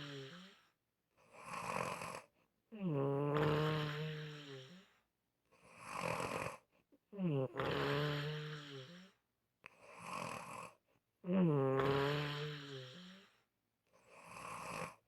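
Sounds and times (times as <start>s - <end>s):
person snoring: 0.0s - 0.7s, 1.3s - 4.9s, 5.6s - 6.6s, 7.2s - 9.2s, 9.8s - 13.4s, 14.0s - 15.0s.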